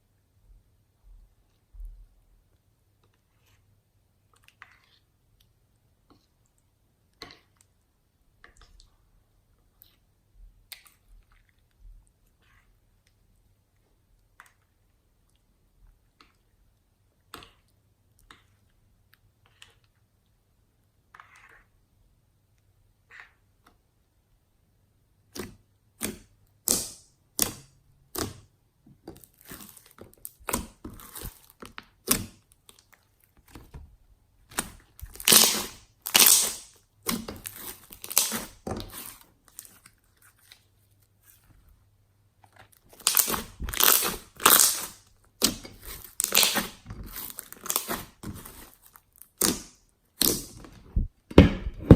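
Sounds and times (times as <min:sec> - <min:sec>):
slime squelching: 0:25.2 - 0:51.9.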